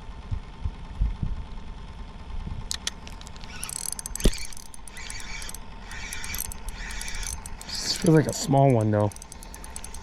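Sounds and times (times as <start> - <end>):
fishing reel clicking: 3.2 - 10.0.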